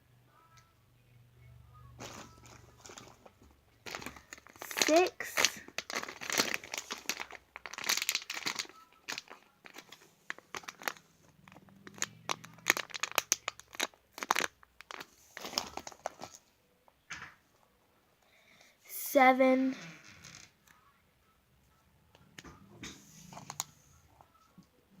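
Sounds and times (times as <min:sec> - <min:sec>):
toys crinkling and rustling: 0:02.0 - 0:17.4, 0:19.9 - 0:20.8, 0:22.2 - 0:24.7.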